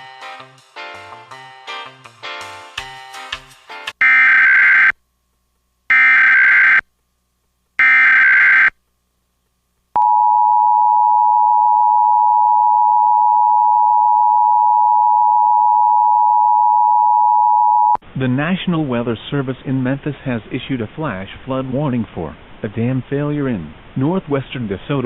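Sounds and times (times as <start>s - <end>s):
two-tone alarm: 4.0s - 4.9s, 5.9s - 6.8s, 7.8s - 8.7s.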